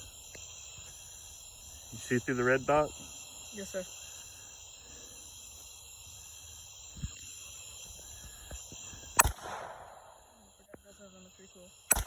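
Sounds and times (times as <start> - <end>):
crickets chirring: 0.0 - 12.0
suppressed gunshot: 9.2 - 10.2.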